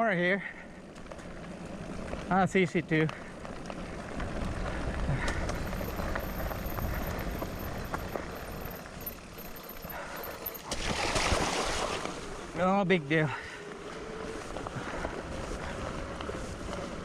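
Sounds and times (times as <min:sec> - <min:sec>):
bike tyres on rough trail: 0:00.0 - 0:17.0
wind rumbling on microphone: 0:02.9 - 0:10.4, 0:13.7 - 0:17.0.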